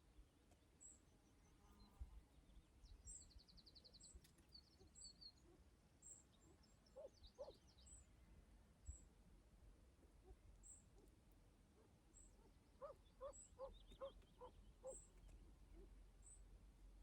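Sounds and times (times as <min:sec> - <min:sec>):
small birds chirping: 0:00.5 - 0:08.1, 0:11.8 - 0:16.5
pheasant low hooting calls: 0:06.4 - 0:07.7, 0:11.8 - 0:16.4.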